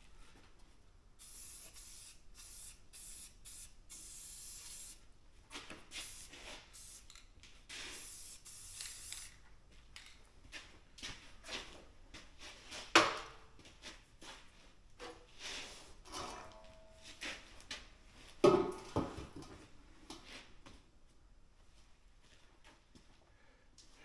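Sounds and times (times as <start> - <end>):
objects knocking and clattering: 18.4 - 19.7.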